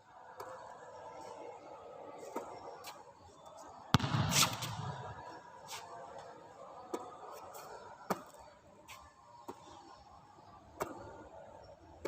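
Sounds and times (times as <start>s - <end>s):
basketball impacts: 3.9s - 5.3s.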